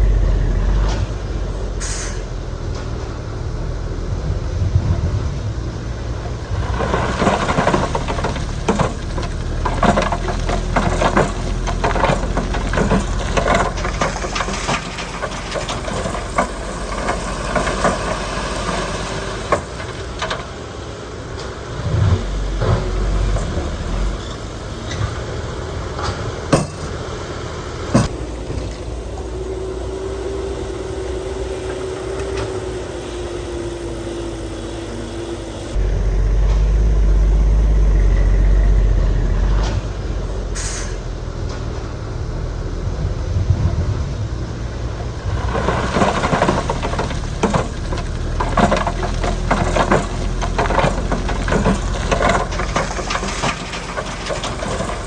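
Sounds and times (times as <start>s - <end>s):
diesel machinery running: 0.0s - 55.0s
sharp metal clanks: 26.5s - 27.1s.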